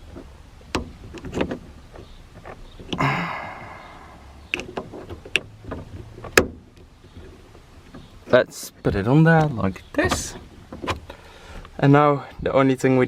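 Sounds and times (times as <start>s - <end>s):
sharp clicks and knocks: 0.0s - 3.0s, 4.5s - 8.4s, 9.4s - 11.1s.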